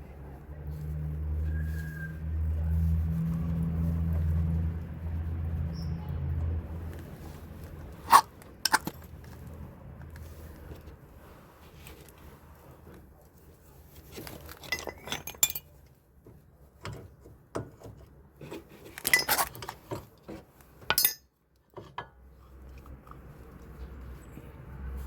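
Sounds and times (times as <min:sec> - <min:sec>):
metallic clinks of tools and brake parts: 0:14.6 - 0:15.8, 0:20.9 - 0:21.3.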